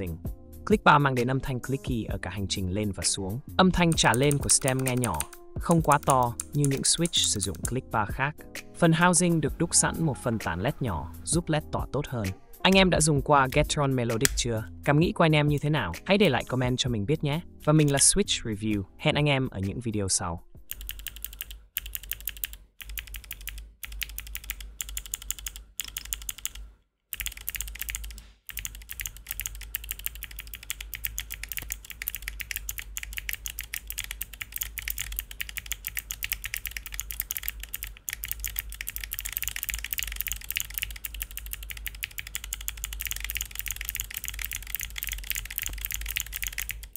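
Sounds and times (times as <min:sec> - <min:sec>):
typing on clicky mechanical keyboard: 0:03.9 - 0:07.7, 0:20.7 - 0:46.9.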